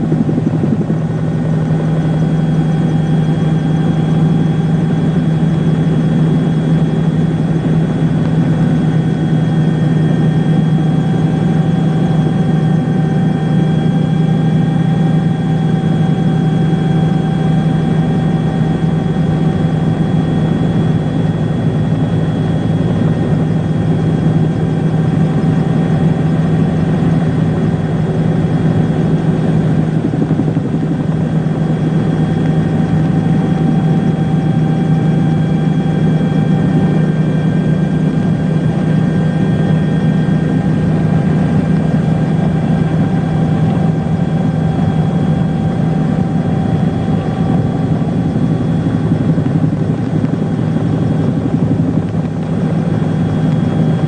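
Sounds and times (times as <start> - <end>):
steady engine drone: 0.0 - 54.0.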